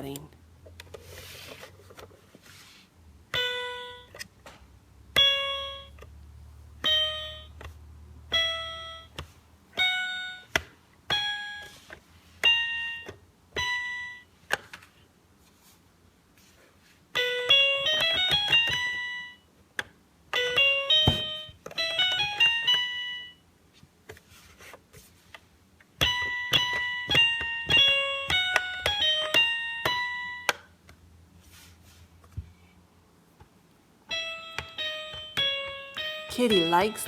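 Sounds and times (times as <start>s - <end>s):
toy keyboard electronic notes: 34.1s - 37.0s.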